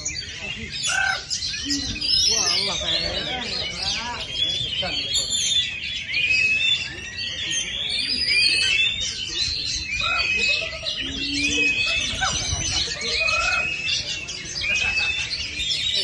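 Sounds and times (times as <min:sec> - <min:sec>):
bird singing whistles and chirps: 0:00.0 - 0:16.0
other songbirds calling: 0:00.0 - 0:16.0.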